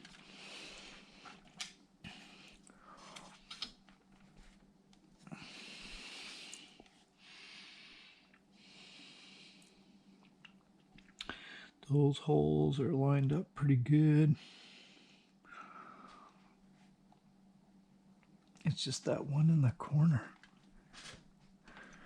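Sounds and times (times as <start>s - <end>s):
faint clicks of small parts: 0.0s - 1.8s, 2.5s - 5.1s, 20.3s - 22.0s
person breathing: 2.0s - 3.5s, 5.2s - 10.1s, 11.2s - 11.8s, 14.4s - 16.6s, 21.6s - 22.0s.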